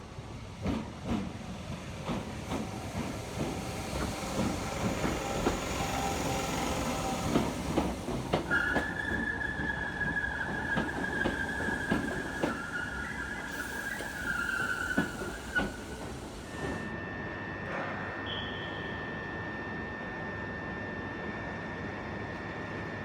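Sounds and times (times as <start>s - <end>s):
high wheel squeal: 8.5s - 16.9s
train wheels clicking over joints: 10.4s - 16.8s.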